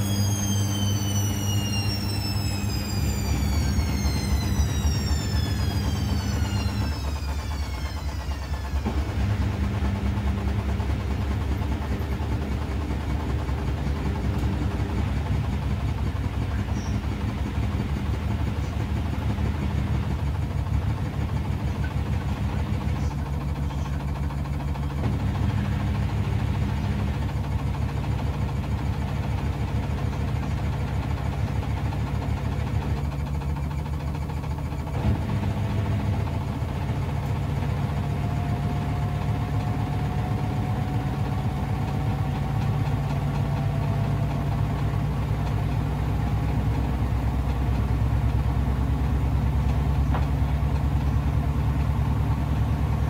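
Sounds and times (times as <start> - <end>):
faint rising whine: 0.0 - 23.2, 34.7 - 49.4
washing machine motor hum: 0.0 - 53.0.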